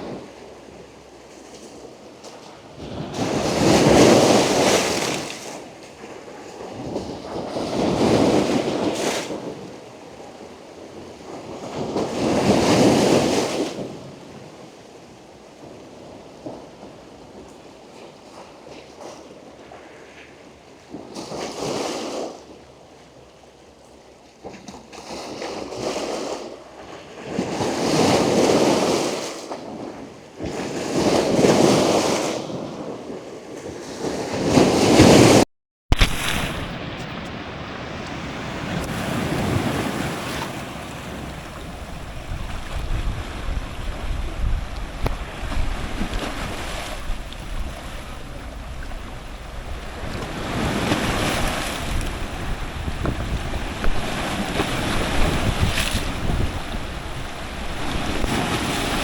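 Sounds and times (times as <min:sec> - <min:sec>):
dull water rush with rumble: 0:00.0 - 0:59.0
surf breaking on rocks: 0:02.8 - 0:09.8, 0:30.4 - 0:59.0.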